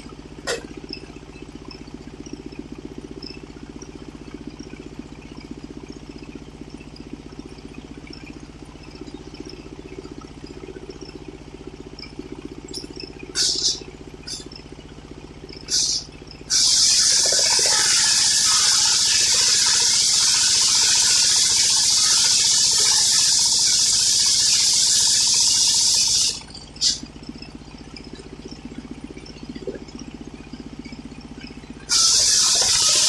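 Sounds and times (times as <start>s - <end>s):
sawmill engine idling: 0.0s - 33.0s
saw cutting with steady hiss: 13.4s - 14.4s, 15.7s - 27.0s, 31.9s - 33.0s.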